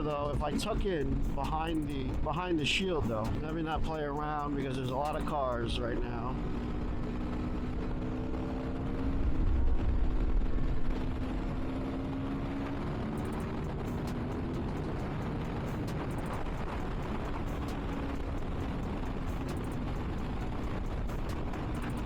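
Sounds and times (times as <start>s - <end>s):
motorcycle engine cruising: 3.1s - 22.0s
wind rushing over microphone: 6.0s - 22.0s.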